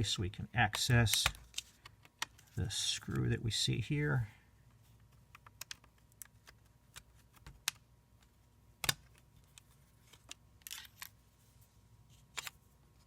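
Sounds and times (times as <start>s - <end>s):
small clicks and taps: 5.0s - 10.4s.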